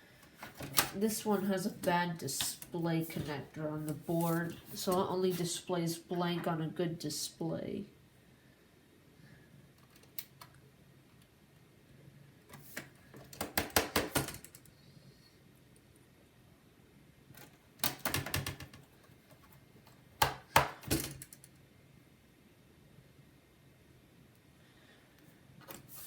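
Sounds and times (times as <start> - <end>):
laptop case rattling and clicking: 17.4 - 19.6.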